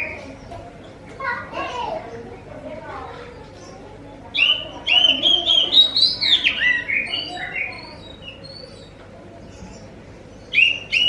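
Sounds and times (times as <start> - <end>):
bird singing whistled notes: 4.3 - 9.0, 10.4 - 11.0.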